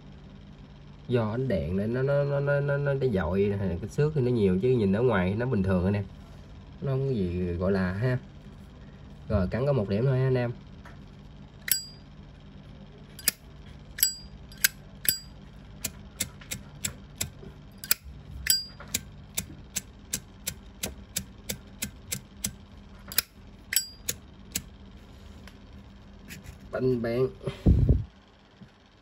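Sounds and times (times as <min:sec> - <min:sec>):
metal lighter lid clicking: 0:13.2 - 0:13.4, 0:14.0 - 0:15.3, 0:17.8 - 0:19.0.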